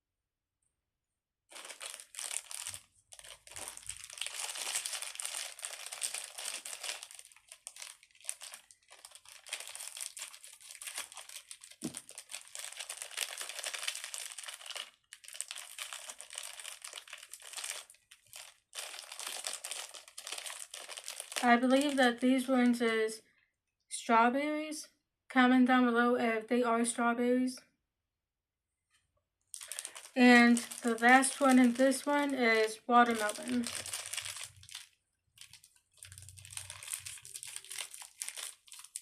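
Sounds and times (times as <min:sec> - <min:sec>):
plastic packaging crinkling: 0:01.5 - 0:22.1, 0:29.5 - 0:39.0.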